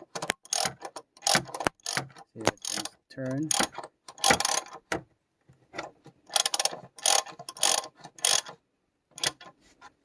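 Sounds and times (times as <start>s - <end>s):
ratchet wrench clicking: 3.5s - 4.8s, 6.3s - 8.6s, 9.2s - 9.4s.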